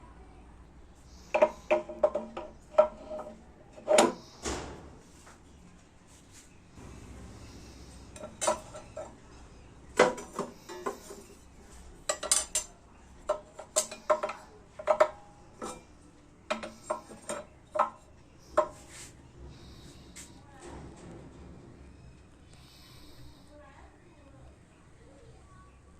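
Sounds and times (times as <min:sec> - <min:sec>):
metal pieces clinking together: 0:12.1 - 0:12.8.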